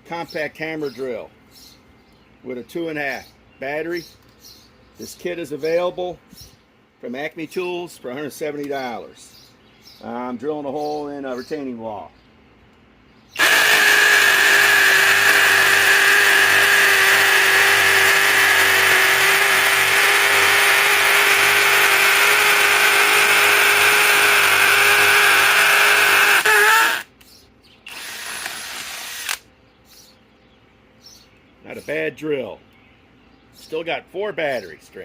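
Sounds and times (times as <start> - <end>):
hammer drill boring into concrete: 13.4 - 27.1, 27.9 - 29.4.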